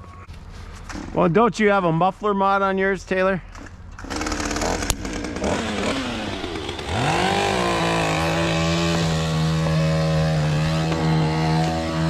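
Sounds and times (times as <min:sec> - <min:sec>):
chainsaw revving: 0:04.0 - 0:12.0.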